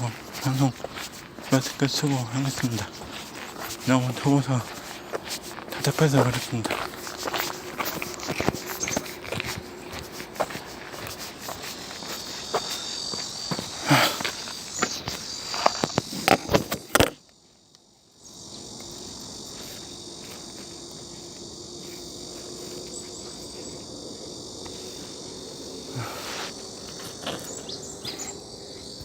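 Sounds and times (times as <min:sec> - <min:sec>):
footsteps thudding: 0:00.0 - 0:16.4
insect chorus: 0:00.0 - 0:29.0.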